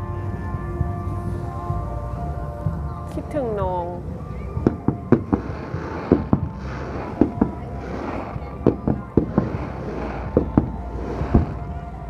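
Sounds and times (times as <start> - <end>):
firework crackling: 0.0 - 12.0
firework shell bursts: 4.6 - 11.9.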